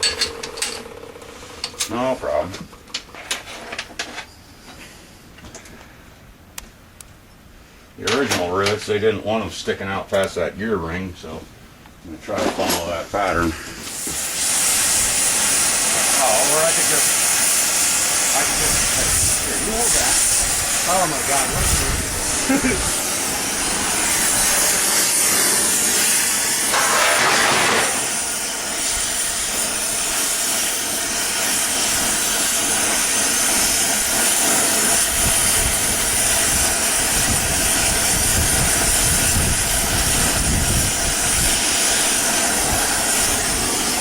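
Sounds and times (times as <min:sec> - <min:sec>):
gas torch hissing: 0:12.8 - 0:44.0.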